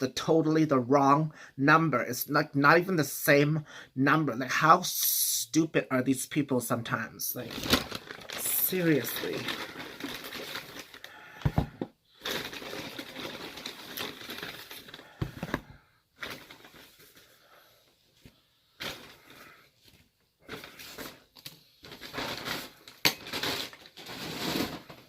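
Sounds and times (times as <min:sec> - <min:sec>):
paper bag and wrappers rustling: 0:07.3 - 0:17.6, 0:18.2 - 0:25.0.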